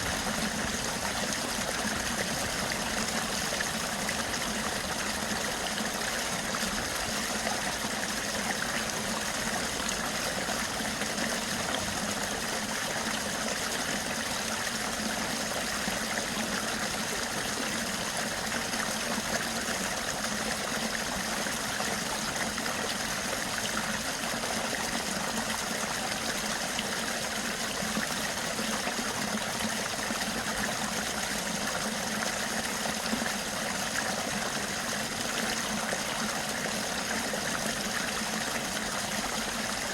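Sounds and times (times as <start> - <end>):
flowing water rushing: 0.0 - 39.9.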